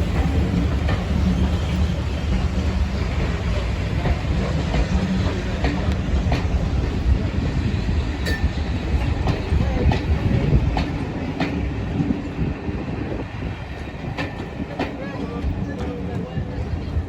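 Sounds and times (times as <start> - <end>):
wheels clicking over rail joints: 0.0 - 7.3
steam train rumbling: 0.0 - 17.0.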